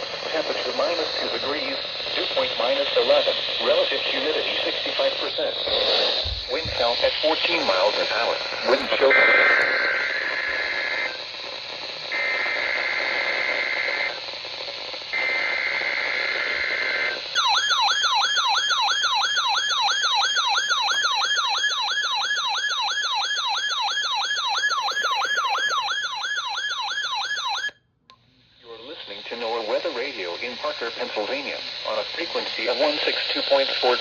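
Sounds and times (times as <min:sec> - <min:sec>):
radio hiss: 0:00.0 - 0:17.4, 0:28.4 - 0:34.0
warbling electronic alarm tone: 0:17.4 - 0:27.8.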